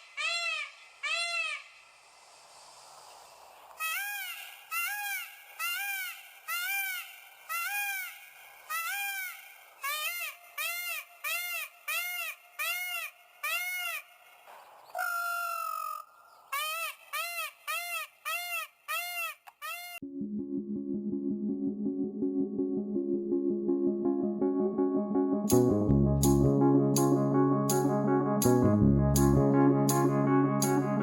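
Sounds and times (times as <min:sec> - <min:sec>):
peacock calling: 0:00.0 - 0:01.8, 0:03.8 - 0:20.0.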